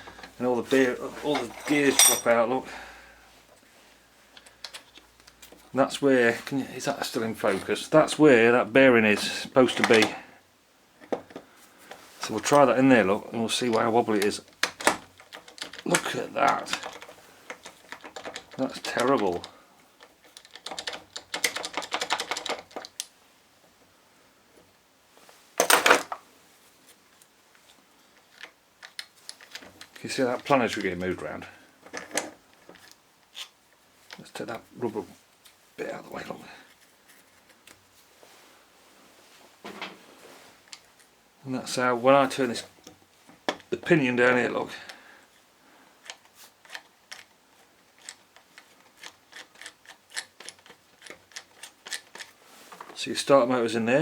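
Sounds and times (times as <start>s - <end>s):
metal parts clattering: 1.4s - 2.4s.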